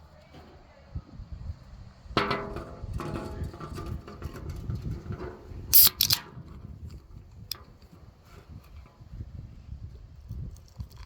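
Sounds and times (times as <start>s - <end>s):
hissing cracks of can opening: 5.7s - 6.2s.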